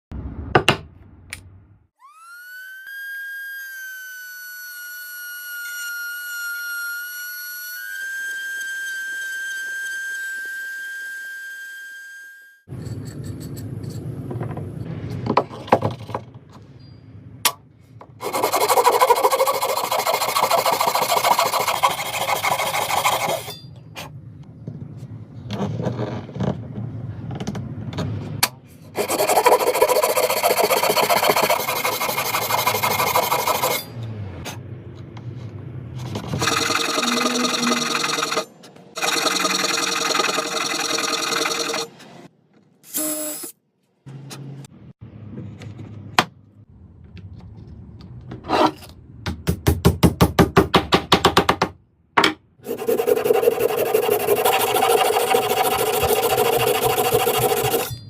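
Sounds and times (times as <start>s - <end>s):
rasping and scraping on wood: 18.2s - 23.6s, 29.0s - 33.9s, 36.0s - 41.9s, 52.6s - 57.9s.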